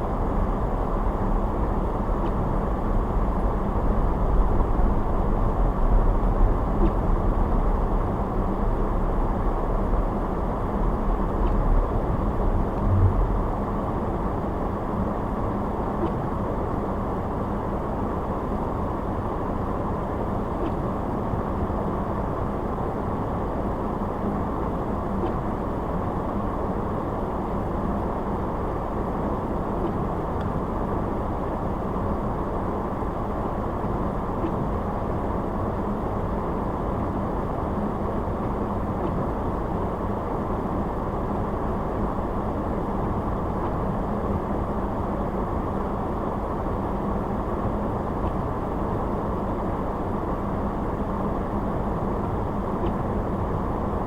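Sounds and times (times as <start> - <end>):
faint low hum: 0.0 - 14.2
car road and engine noise: 0.0 - 54.0.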